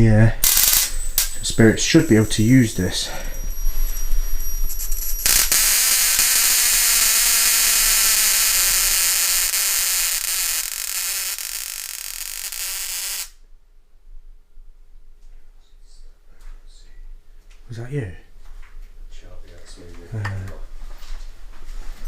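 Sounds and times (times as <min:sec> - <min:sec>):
electrical hiss-buzz: 0:00.4 - 0:13.4.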